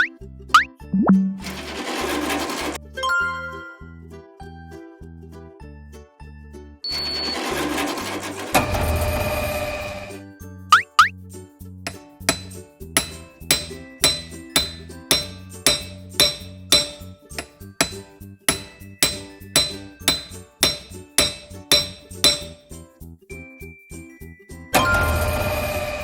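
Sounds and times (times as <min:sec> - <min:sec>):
bouncy background music: 0:00.0 - 0:26.0
cartoon metallic clinking: 0:10.7 - 0:11.1, 0:11.9 - 0:22.7.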